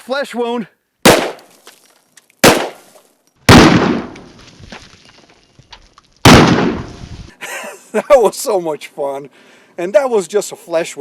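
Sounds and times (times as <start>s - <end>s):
pistol shots with ringing tail: 1.1s - 1.4s, 2.4s - 2.9s, 3.5s - 4.2s, 6.3s - 6.9s.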